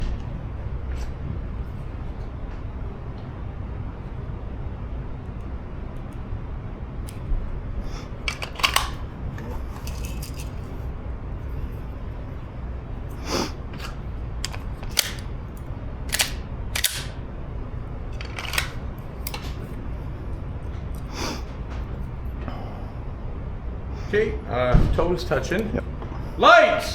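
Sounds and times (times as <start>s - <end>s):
sharp clicks and knocks: 8.3s - 10.6s, 13.8s - 15.3s, 16.1s - 17.2s, 18.2s - 19.6s.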